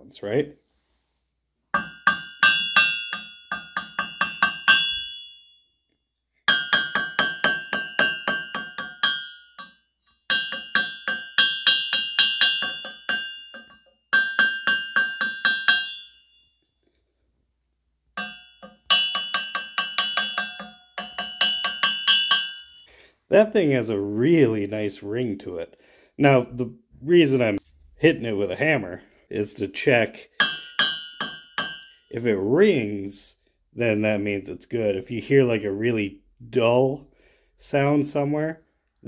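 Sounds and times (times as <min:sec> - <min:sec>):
hammer ringing on metal crankshaft: 0:01.8 - 0:05.5, 0:06.5 - 0:16.4, 0:18.2 - 0:22.9, 0:30.4 - 0:32.1.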